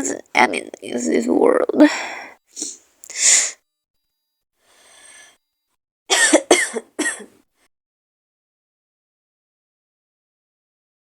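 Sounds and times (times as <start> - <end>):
woman breathing in noisily: 1.9 - 3.6, 4.6 - 5.4
woman coughing: 6.1 - 7.3.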